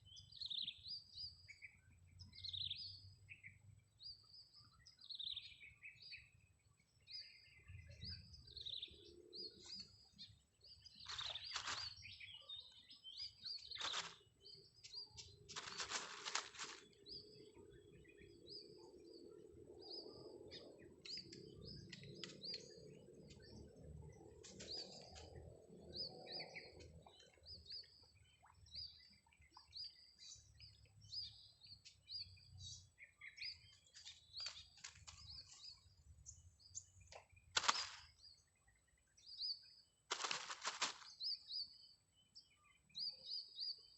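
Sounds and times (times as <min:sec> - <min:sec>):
birds chirping: 0:00.0 - 0:43.9.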